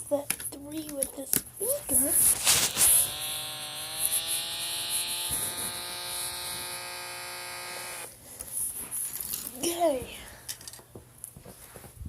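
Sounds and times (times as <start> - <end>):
toy speaker electronic tone: 2.6 - 8.1.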